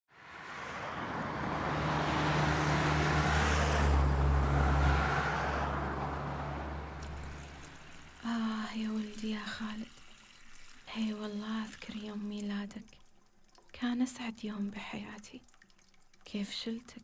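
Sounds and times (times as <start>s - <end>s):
car engine and road noise: 0.1s - 8.3s.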